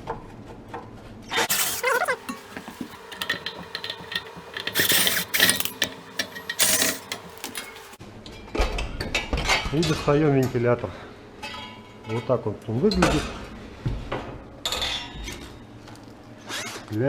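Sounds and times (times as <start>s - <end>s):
tool clicking and grinding: 1.5s - 8.0s.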